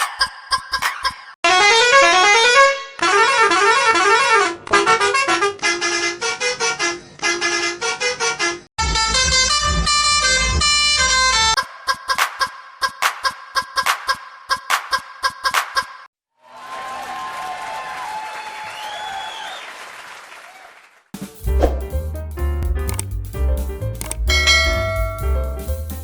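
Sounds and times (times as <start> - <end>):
bus horn melody: 1.5 - 11.6
heavy bass beat: 21.2 - 26.0
quick sharp clicks: 22.7 - 23.3, 24.0 - 24.3.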